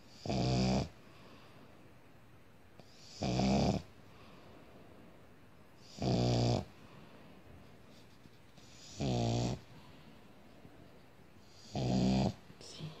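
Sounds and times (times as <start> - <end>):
dog snoring: 0.0 - 1.0, 2.8 - 4.0, 5.8 - 6.7, 8.6 - 9.7, 11.4 - 12.5.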